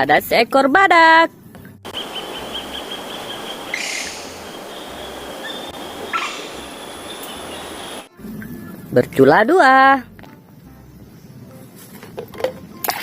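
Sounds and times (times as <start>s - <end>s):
running water: 1.9s - 8.1s.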